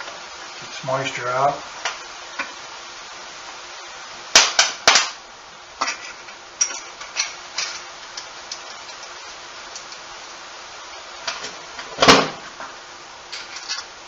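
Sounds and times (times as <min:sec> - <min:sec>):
metal tools clicking and knocking: 0:05.8 - 0:09.2.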